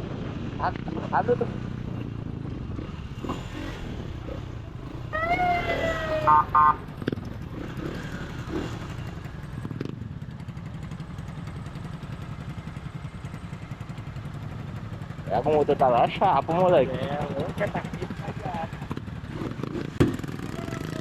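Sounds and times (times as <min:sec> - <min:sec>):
motorcycle engine running: 0:00.0 - 0:21.0
loud siren beeps: 0:05.1 - 0:06.9
police siren falling tone: 0:05.1 - 0:06.9.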